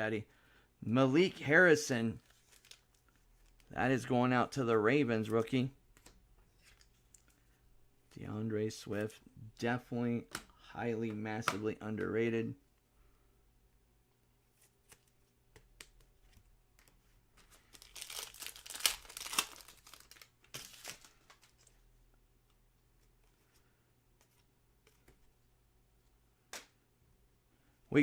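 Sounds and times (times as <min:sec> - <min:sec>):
card pack wrapper tearing: 0:17.6 - 0:21.3.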